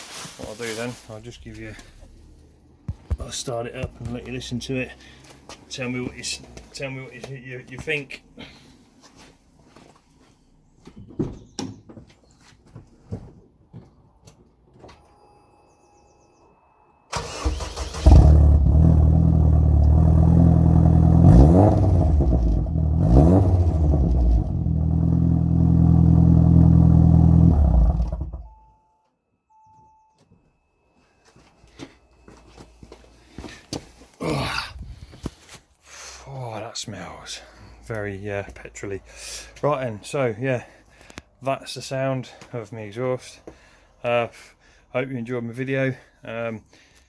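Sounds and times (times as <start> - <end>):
short beeps: 15.0 - 17.1, 28.4 - 30.9
car engine starting and revving: 17.1 - 28.6.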